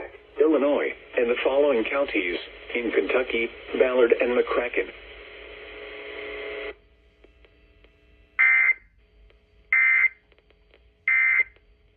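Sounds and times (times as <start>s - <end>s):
radio hiss: 0.0s - 8.7s.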